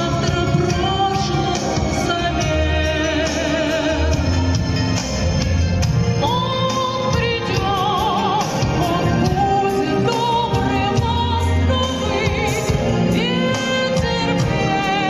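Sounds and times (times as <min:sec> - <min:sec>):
woman singing with vibrato: 0:00.0 - 0:04.8, 0:06.1 - 0:15.0
instrumental accompaniment: 0:00.0 - 0:15.0.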